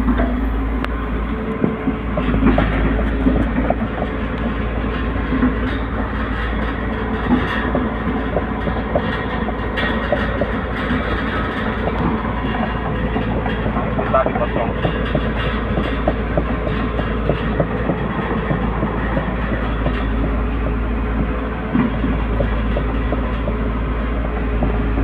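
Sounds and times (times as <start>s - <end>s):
excavator engine rumble: 0.0s - 25.0s
metallic clanks and clicks: 1.5s - 25.0s.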